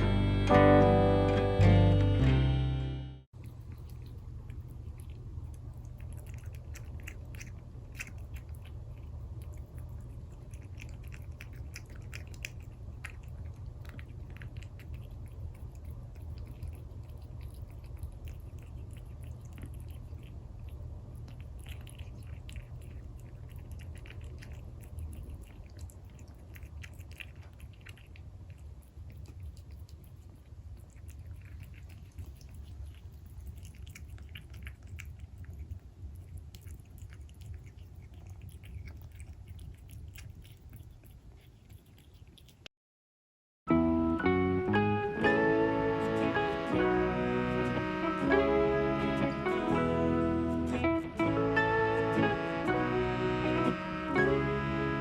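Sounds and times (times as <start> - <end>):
steady low hum: 0.0 - 42.2
kitten chewing food: 3.3 - 42.7, 45.4 - 55.0.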